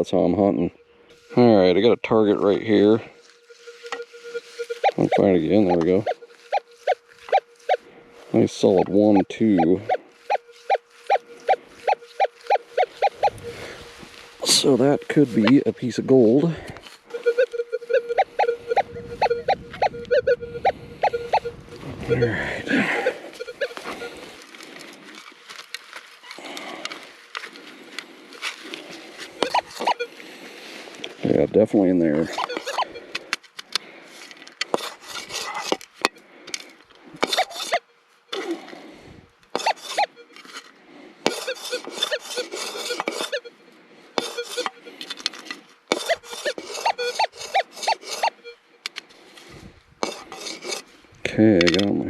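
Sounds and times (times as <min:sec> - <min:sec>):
metal detector beeps: 0:00.0 - 0:24.5, 0:28.8 - 0:30.5, 0:31.2 - 0:33.4, 0:37.2 - 0:38.5, 0:39.5 - 0:40.5, 0:41.3 - 0:49.0
digging in gravelly soil: 0:00.0 - 0:52.0.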